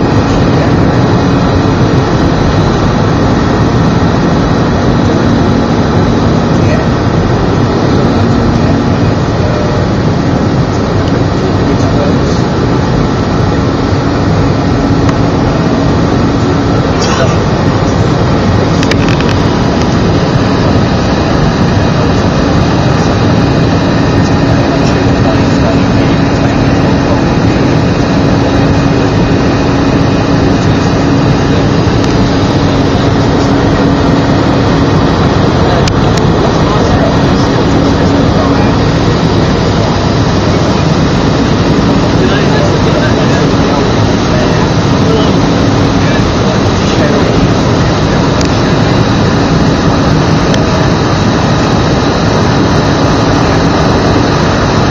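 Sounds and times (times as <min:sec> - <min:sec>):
aircraft cabin rumble: 0:00.0 - 0:54.9
steady hum: 0:00.0 - 0:54.9.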